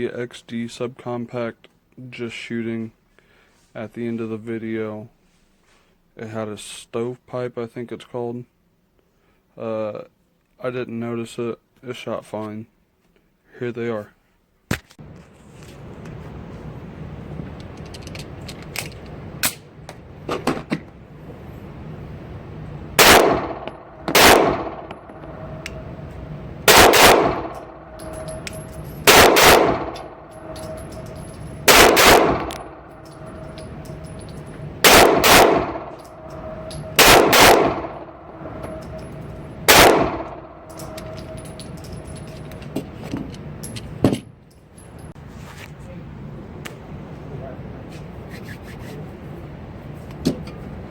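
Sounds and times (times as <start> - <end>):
pistol shots: 23.0 - 25.6, 26.6 - 33.3, 34.8 - 38.3, 39.6 - 40.9.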